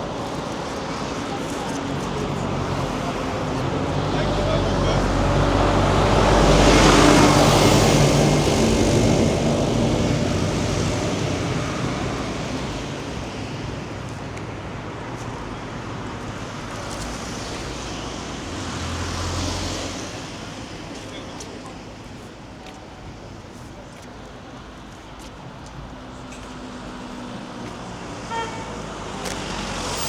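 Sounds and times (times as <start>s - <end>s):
street traffic noise: 0.0s - 30.0s
motor vehicle passing close by: 2.2s - 13.2s.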